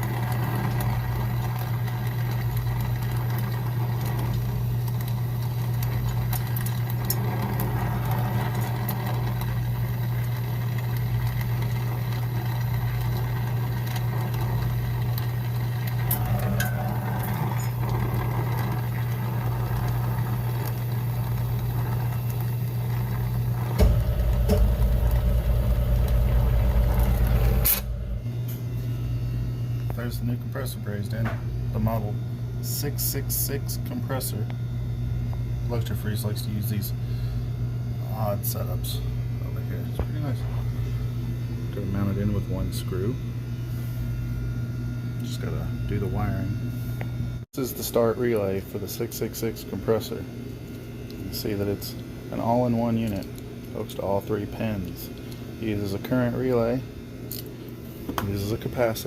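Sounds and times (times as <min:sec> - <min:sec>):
low machine hum: 0:00.0 - 0:59.0
high steady tone: 0:16.2 - 0:17.8, 0:23.8 - 0:29.5
deep rumble: 0:23.8 - 0:29.6.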